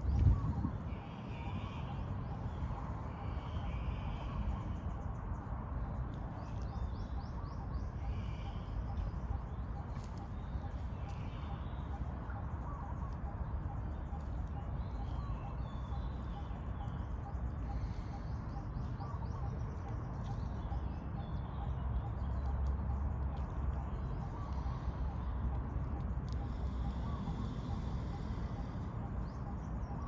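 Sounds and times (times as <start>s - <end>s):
faint bird calls: 6.5s - 22.6s, 23.3s - 30.0s.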